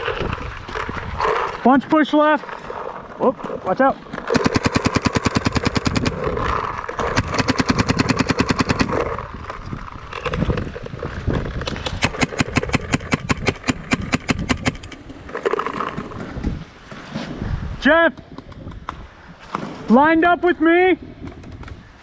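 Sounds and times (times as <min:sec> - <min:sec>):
paintball marker firing rapidly: 0:04.3 - 0:06.4, 0:07.0 - 0:09.2, 0:11.6 - 0:15.0.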